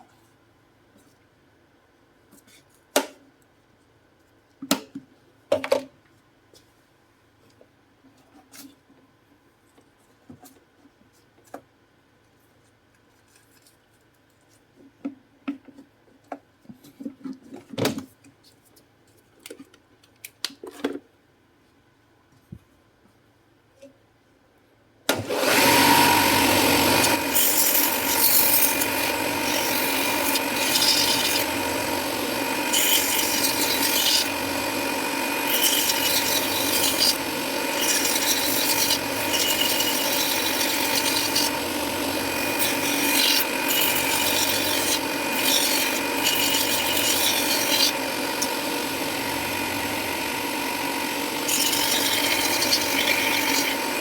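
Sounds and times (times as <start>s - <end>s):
rotary grinder grinding plastic: 25.2s - 54.0s.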